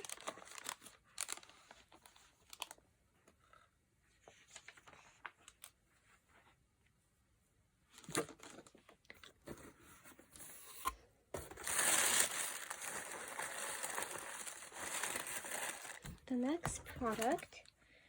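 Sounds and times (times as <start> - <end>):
wrapping crinkling: 0.0 - 2.8, 11.5 - 17.6.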